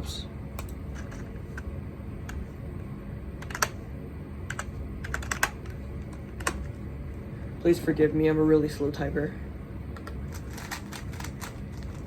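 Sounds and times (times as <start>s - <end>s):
keyboard typing: 3.4s - 3.8s, 4.5s - 5.8s, 10.3s - 12.0s.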